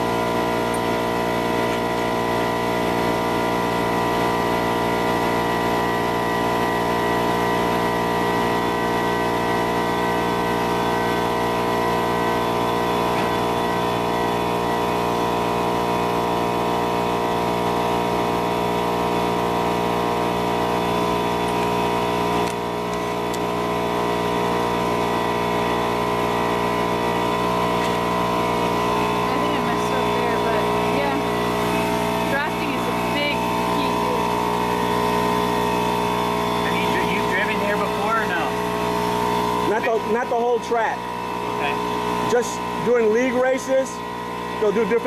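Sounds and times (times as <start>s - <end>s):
engine running steadily: 0.0s - 45.0s.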